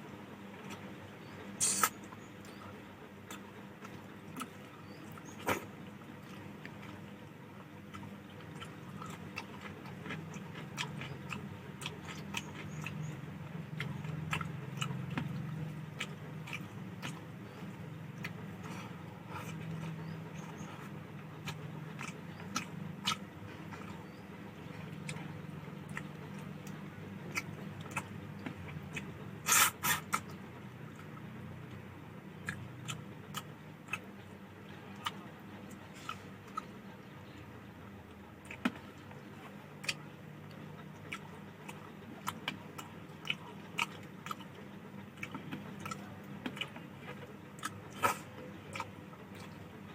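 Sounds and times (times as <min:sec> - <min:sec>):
person chewing food: 0:00.5 - 0:37.4, 0:38.1 - 0:49.9
wet mouth clicks and smacks: 0:01.6 - 0:02.0.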